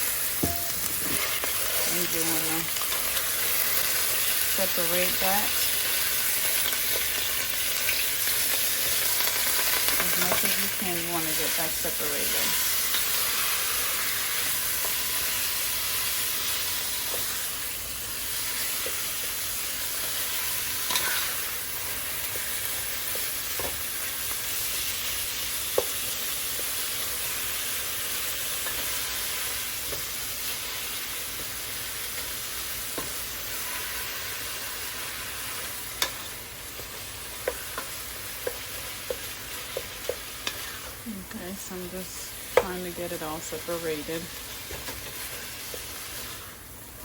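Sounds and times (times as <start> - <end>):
meat sizzling in oil: 0.0 - 47.0.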